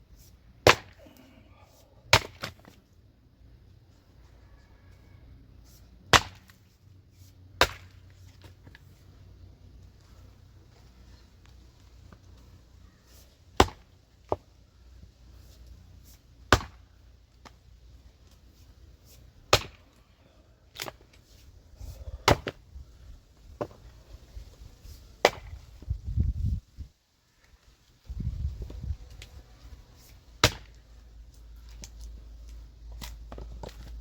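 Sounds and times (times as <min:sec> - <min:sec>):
axe chopping firewood: 0:00.6 - 0:01.2, 0:02.1 - 0:02.8, 0:06.1 - 0:06.6, 0:07.6 - 0:08.6, 0:13.5 - 0:14.4, 0:16.4 - 0:17.6, 0:19.5 - 0:20.0, 0:20.7 - 0:21.2, 0:22.2 - 0:22.6, 0:23.6 - 0:23.9, 0:25.2 - 0:25.7, 0:30.4 - 0:30.8.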